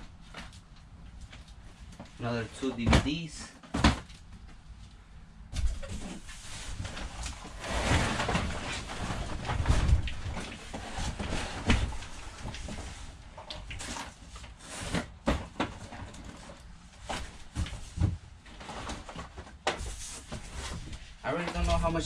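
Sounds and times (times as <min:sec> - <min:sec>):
knocks and clicks of cases: 0:02.8 - 0:04.6.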